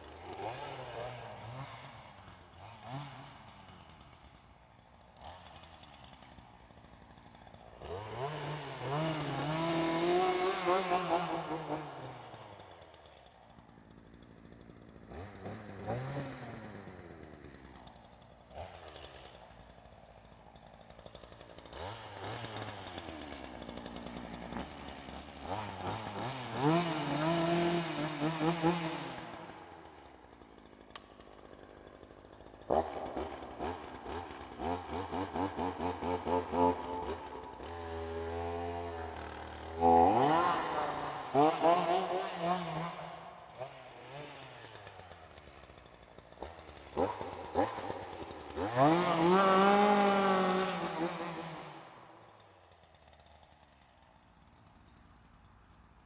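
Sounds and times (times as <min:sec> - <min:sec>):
chainsaw engine idling and revving: 0:00.0 - 0:56.0.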